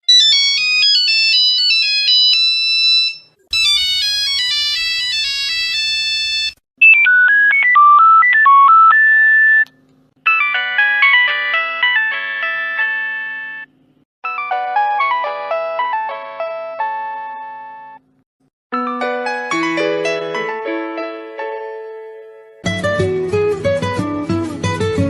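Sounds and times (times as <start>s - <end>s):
mobile phone ringtone melodies: 0.1s - 9.6s, 10.2s - 18.0s.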